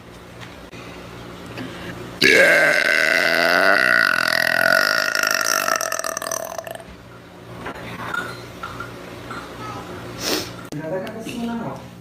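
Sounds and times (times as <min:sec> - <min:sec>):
woman burping: 0:02.2 - 0:06.8.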